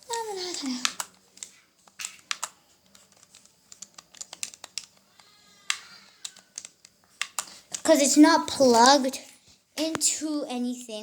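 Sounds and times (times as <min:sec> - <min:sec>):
game controller button clicks: 0:04.1 - 0:07.5.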